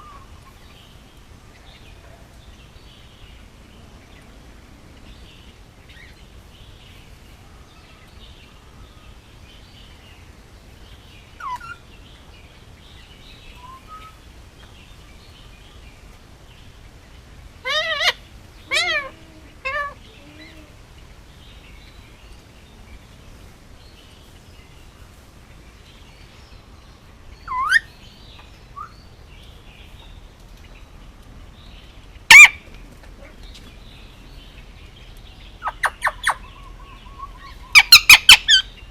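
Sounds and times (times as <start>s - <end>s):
parakeet calling: 11.4s - 11.8s, 17.6s - 20.8s, 27.4s - 28.0s, 32.2s - 32.7s, 35.4s - 38.9s
parakeet squawk: 17.6s - 20.6s, 32.3s - 32.6s, 37.1s - 38.7s.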